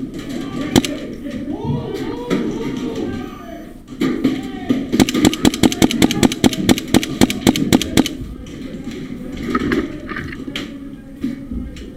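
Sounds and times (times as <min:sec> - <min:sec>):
airsoft pistol shots: 0:05.0 - 0:08.2.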